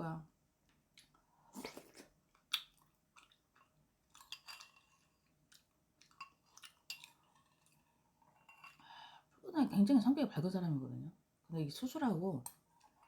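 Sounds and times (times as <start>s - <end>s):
person chewing food: 0.9s - 8.8s
mouth clicks and smacks: 1.0s - 3.4s.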